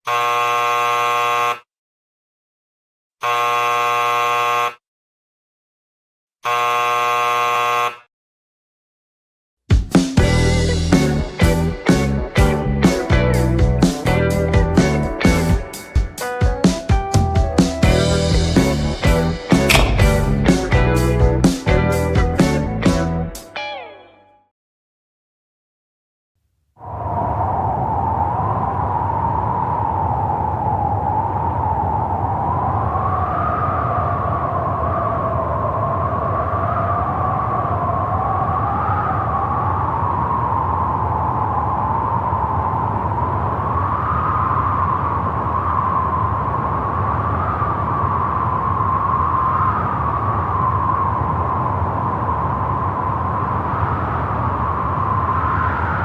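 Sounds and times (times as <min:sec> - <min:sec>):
electric buzzer: 0:00.0 - 0:01.7, 0:03.2 - 0:04.8, 0:06.4 - 0:08.1.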